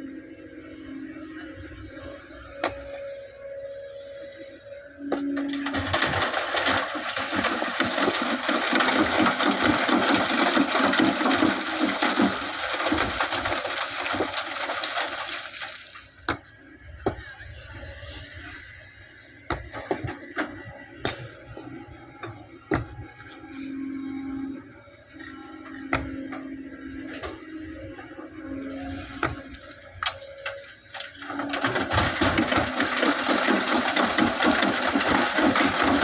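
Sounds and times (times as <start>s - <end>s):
sand pouring into truck bed: 5.8s - 16.0s, 31.7s - 36.0s.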